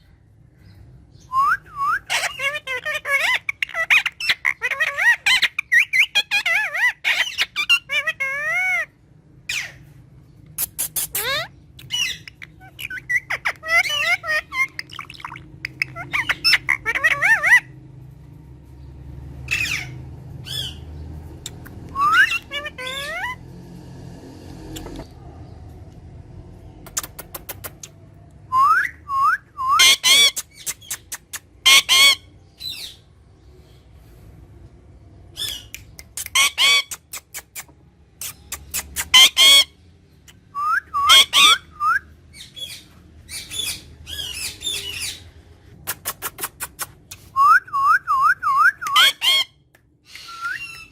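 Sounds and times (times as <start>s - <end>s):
parrot squawking: 1.8s - 9.9s, 10.6s - 17.8s, 19.5s - 20.8s, 21.4s - 23.4s, 28.6s - 33.1s, 35.4s - 50.9s
parrot whistling: 21.9s - 23.4s, 40.5s - 42.1s, 47.3s - 49.5s, 50.1s - 50.9s.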